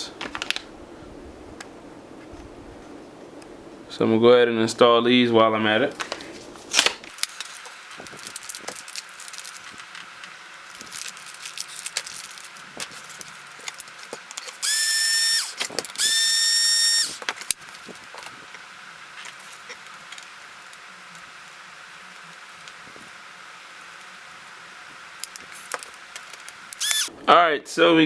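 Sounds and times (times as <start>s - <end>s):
small parts clicking: 13.6s - 17.3s, 25.2s - 27.1s
electric screwdriver whine: 14.6s - 17.2s, 26.8s - 27.1s.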